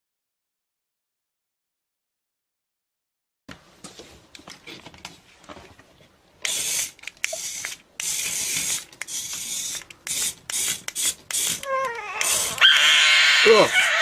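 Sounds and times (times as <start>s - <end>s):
sharp hissing bursts: 6.4s - 14.0s.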